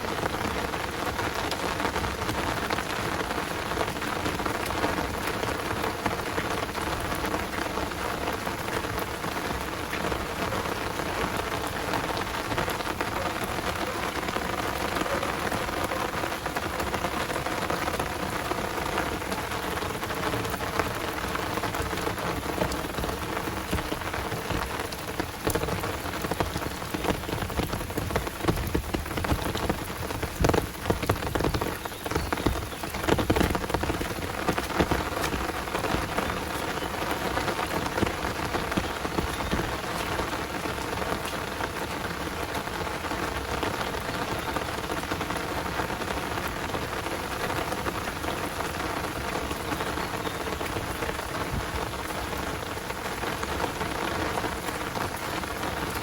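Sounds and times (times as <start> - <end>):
heavy rain pouring: 0.0 - 56.0.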